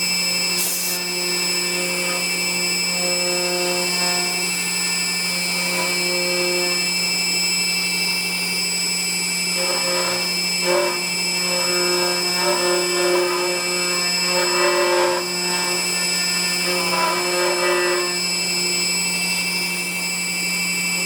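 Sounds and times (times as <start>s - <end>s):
axis motors humming: 0.0s - 21.0s
router spindle whining: 0.0s - 21.0s
rough cutting noise: 0.4s - 4.5s.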